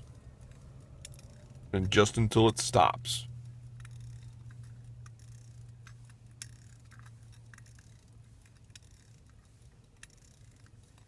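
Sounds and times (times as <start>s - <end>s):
watch winding ratchet clicks: 0.0s - 2.1s, 3.2s - 11.0s
low steady hum: 0.0s - 11.0s.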